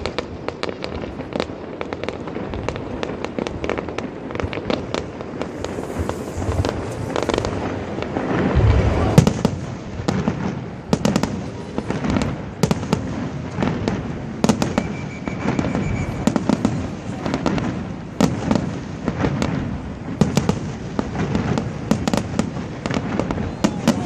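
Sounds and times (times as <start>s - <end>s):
fireworks bangs: 0.0s - 24.0s
firework whistle: 4.5s - 10.2s, 14.4s - 18.6s, 22.8s - 24.0s.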